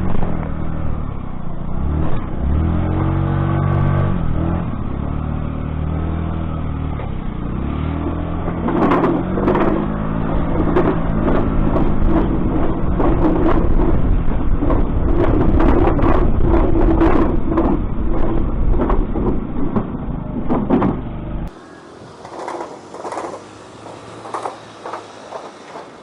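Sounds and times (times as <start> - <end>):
moped engine revving: 0.0 - 26.0
sharp knocks or rattles: 8.4 - 21.2.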